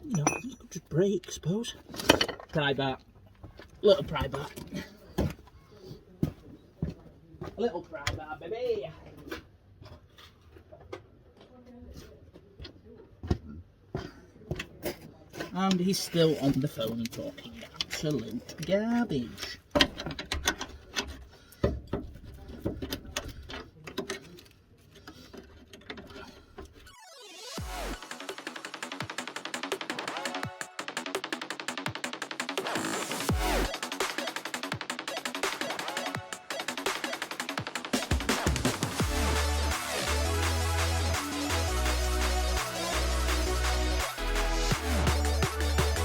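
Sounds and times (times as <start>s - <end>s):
hand tools knocking on metal: 0.0s - 0.8s
electronic music with heavy bass: 26.9s - 46.0s.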